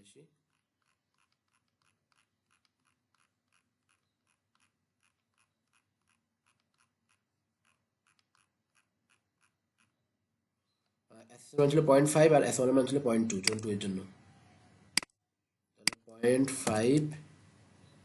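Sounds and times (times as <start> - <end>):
mouse scroll wheel clicks: 0.5 - 10.0.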